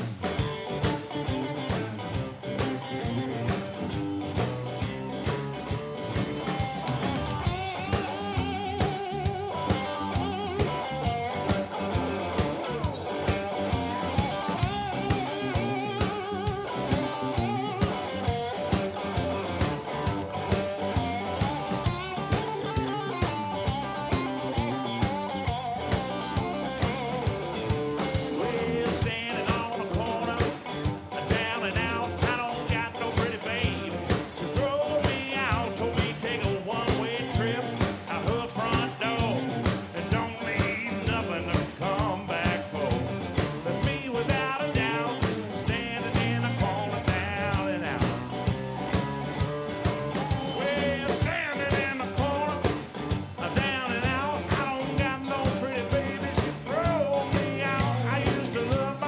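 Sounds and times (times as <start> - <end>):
drum-kit beat: 0.0 - 59.0
electric guitar: 0.0 - 59.0
person singing: 28.1 - 48.3, 50.3 - 52.8, 53.4 - 59.0.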